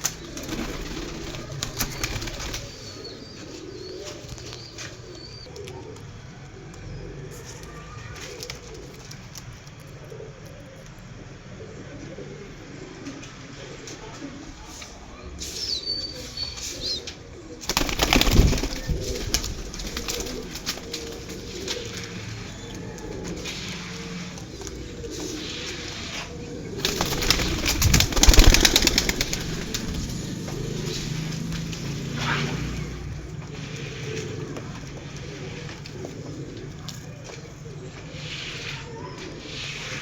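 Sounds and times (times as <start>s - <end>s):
wings flapping: 0.0s - 6.1s, 7.4s - 10.0s, 17.1s - 37.5s
pigeons cooing: 0.0s - 40.0s.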